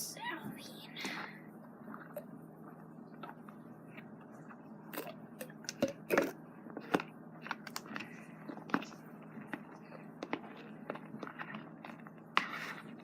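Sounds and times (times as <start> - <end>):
fork stirring sticky slime: 6.8 - 13.0.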